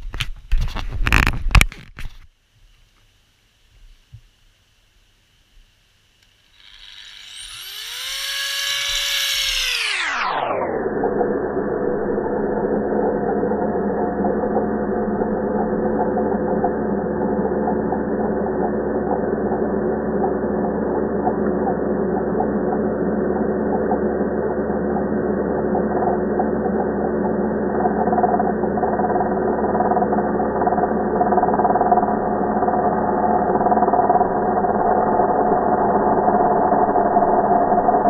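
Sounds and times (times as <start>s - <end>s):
slowed angle grinder drone: 6.2s - 38.0s.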